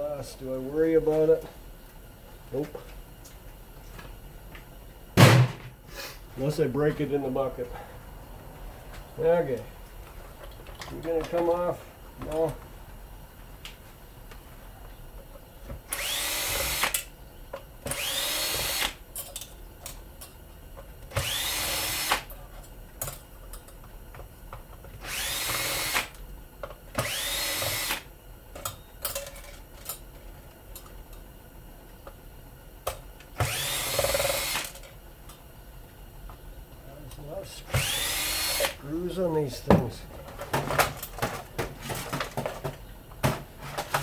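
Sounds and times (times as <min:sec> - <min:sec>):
power drill spinning up: 0:15.9 - 0:17.0, 0:17.9 - 0:19.0, 0:21.1 - 0:22.3, 0:25.0 - 0:26.1, 0:27.0 - 0:28.1, 0:33.4 - 0:34.8, 0:37.7 - 0:38.8.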